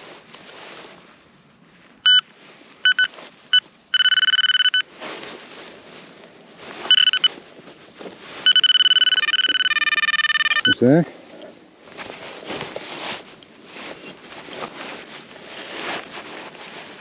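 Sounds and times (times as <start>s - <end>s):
soft rustling: 0.0s - 17.0s
metal detector beeps and tones: 2.0s - 4.9s, 6.9s - 7.3s, 8.4s - 10.8s.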